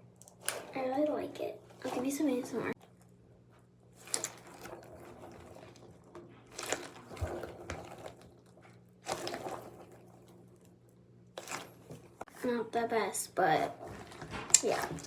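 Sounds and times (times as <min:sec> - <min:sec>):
squishy toy squishing: 0:03.9 - 0:10.4.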